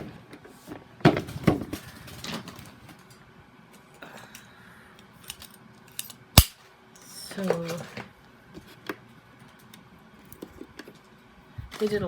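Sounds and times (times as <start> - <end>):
sharp click: 6.4 - 6.6.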